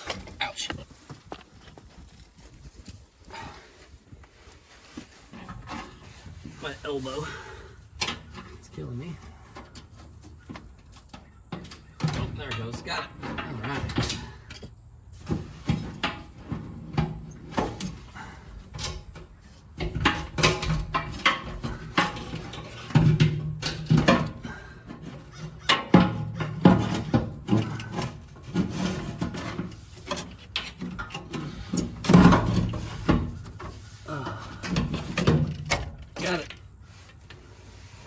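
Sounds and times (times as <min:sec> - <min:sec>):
knocks and clatter: 0:18.8 - 0:33.8.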